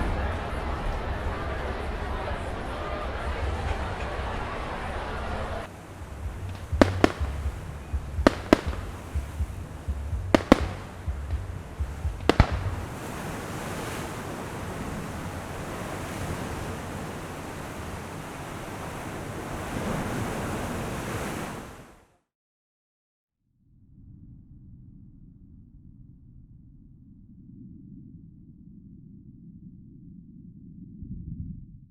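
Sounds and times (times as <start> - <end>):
steady rushing noise: 0.0 - 21.9
low rumble: 5.5 - 13.2
sharp bangs: 6.2 - 13.3.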